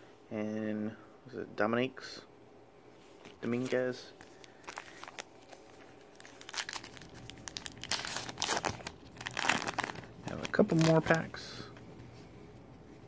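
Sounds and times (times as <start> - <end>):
wrapper crinkling and tearing: 3.2 - 11.4.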